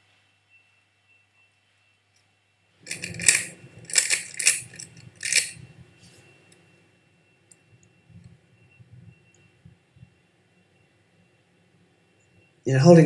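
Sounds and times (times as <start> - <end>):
puzzle cube clicking: 2.9 - 5.6.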